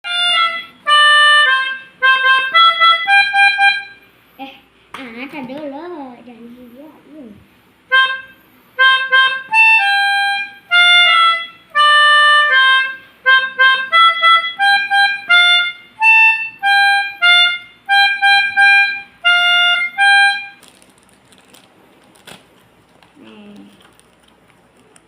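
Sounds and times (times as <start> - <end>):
melodica playing reedy notes: 0.0 - 4.0, 7.9 - 20.6.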